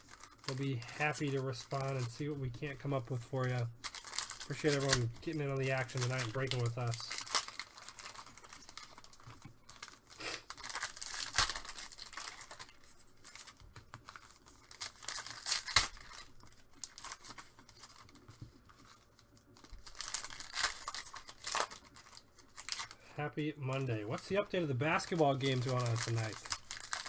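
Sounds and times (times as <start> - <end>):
wrapping torn and crinkled: 0.0 - 27.0.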